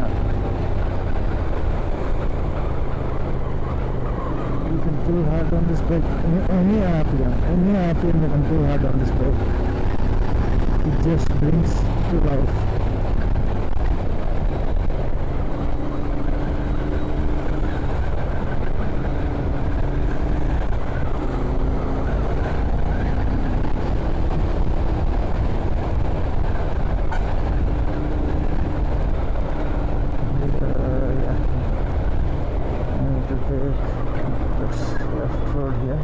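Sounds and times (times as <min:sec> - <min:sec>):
motorcycle engine riding on road: 0:00.0 - 0:36.0.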